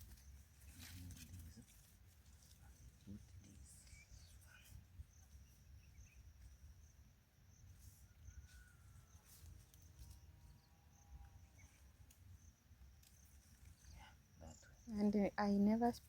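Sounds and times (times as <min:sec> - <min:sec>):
soft rustles: 0:00.0 - 0:04.8.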